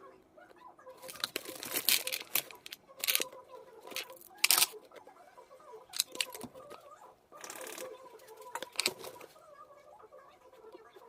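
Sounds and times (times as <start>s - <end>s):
jewelry clicking and clinking: 1.0s - 3.3s, 3.9s - 4.8s, 6.0s - 6.5s
packaging rustling: 1.0s - 4.8s, 6.0s - 6.6s, 8.5s - 9.3s.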